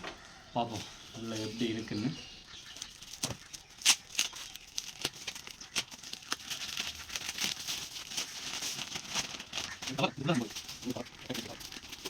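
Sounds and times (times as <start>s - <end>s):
packaging tearing and crumpling: 2.8s - 12.0s.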